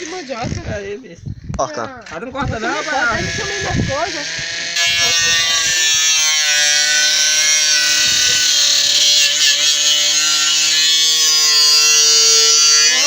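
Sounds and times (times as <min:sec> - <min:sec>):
grinder rasping into wood: 0:00.0 - 0:00.9, 0:02.1 - 0:13.0
angle grinder whine: 0:00.0 - 0:01.0, 0:02.0 - 0:13.0.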